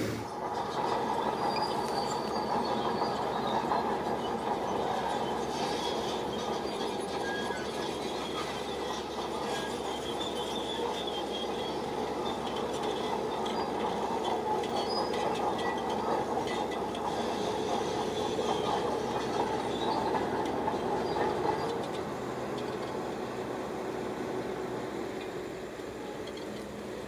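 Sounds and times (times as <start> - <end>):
bulldozer diesel engine under load: 0.0 - 27.0
steel tracks clanking and squealing: 0.0 - 27.0.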